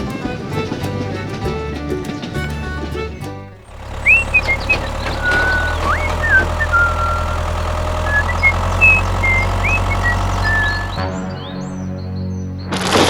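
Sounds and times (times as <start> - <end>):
vehicle engine idling: 0.1 - 11.8
short chirping whistles: 3.7 - 11.0.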